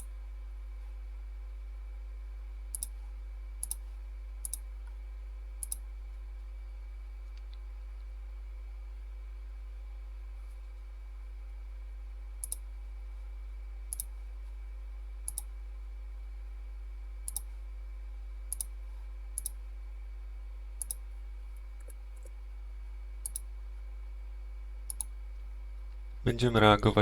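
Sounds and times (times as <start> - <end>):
low electrical hum: 0.0 - 27.0
computer mouse clicking: 2.7 - 3.0, 3.6 - 5.0, 5.6 - 5.8, 12.4 - 12.7, 13.9 - 14.2, 15.2 - 15.5, 17.2 - 17.5, 18.5 - 18.8, 19.4 - 19.6, 20.8 - 21.0, 21.7 - 22.4, 23.2 - 23.5, 24.9 - 25.2.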